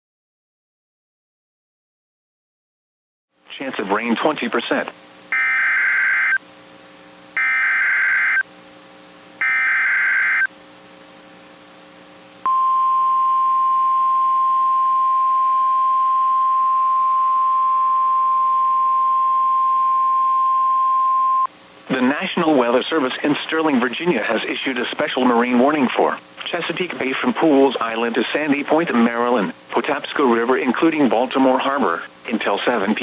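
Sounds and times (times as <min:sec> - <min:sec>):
steady warning alarm tone: 0:05.3 - 0:06.4, 0:07.4 - 0:08.4, 0:09.4 - 0:10.5, 0:12.5 - 0:21.5
data header bursts: 0:09.4 - 0:10.5.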